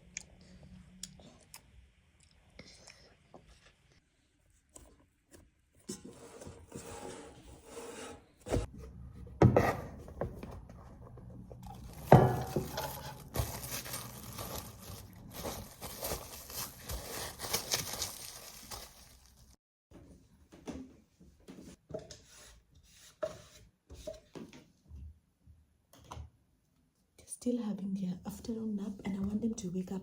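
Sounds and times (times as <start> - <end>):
rubbing and scraping on hard surface: 5.8 - 8.7.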